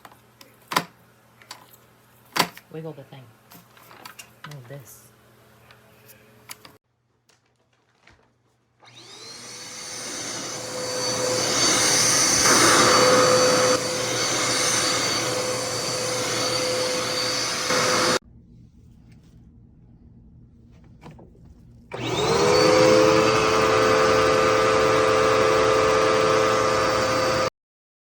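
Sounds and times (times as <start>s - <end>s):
vacuum cleaner motor whining: 8.8s - 18.2s, 21.9s - 27.5s.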